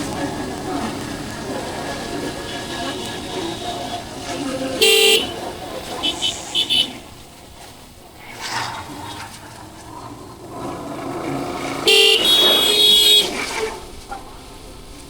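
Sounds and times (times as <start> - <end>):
vehicle horns honking: 0.0 - 7.7, 11.8 - 13.6
motorcycle riding noise: 0.0 - 15.0.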